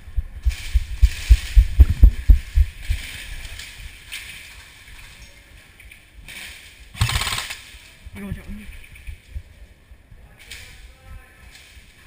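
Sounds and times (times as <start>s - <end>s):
dull low thumps of camera jostling: 0.0s - 3.5s.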